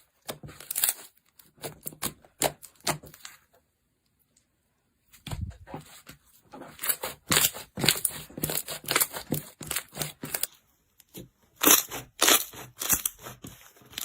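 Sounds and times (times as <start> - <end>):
slime crackling and popping: 11.6 - 13.2.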